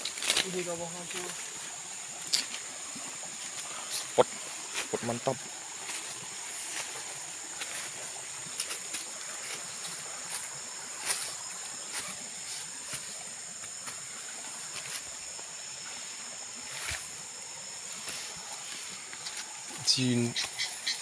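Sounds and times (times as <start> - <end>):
snaps and crackles: 0.0 - 1.3
insects droning: 0.0 - 21.0.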